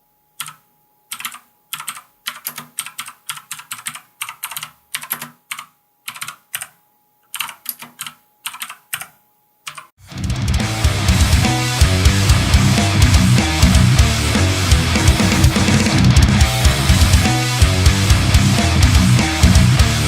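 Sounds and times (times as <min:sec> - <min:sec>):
mechanical keyboard typing clicks: 0:00.4 - 0:09.9
loud music: 0:10.0 - 0:20.0.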